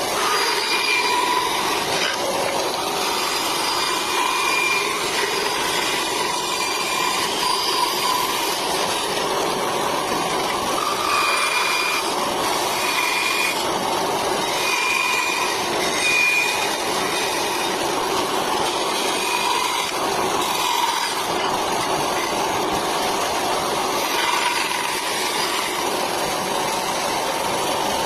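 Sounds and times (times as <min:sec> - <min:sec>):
high-pitched blade whine: 0:00.0 - 0:13.7, 0:14.4 - 0:22.3
bandsaw cutting wood: 0:00.0 - 0:28.0.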